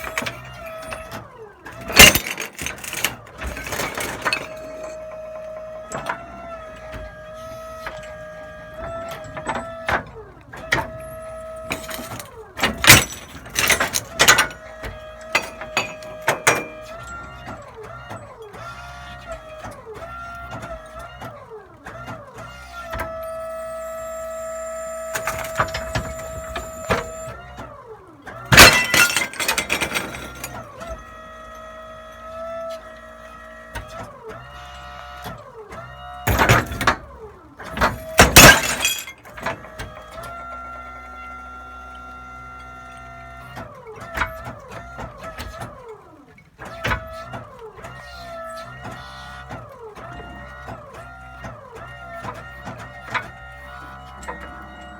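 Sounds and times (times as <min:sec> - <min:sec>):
dishwashing machine whine: 0:01.8 - 0:10.1, 0:10.7 - 0:18.2, 0:22.9 - 0:27.5, 0:28.5 - 0:31.5, 0:37.7 - 0:40.0
breaking glass crashing: 0:28.6 - 0:30.4, 0:38.2 - 0:39.1.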